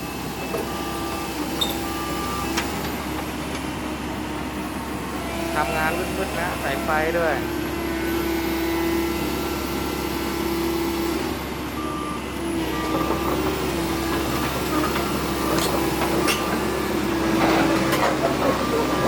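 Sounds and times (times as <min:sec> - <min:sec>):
excavator engine and hydraulics: 0:00.0 - 0:19.0.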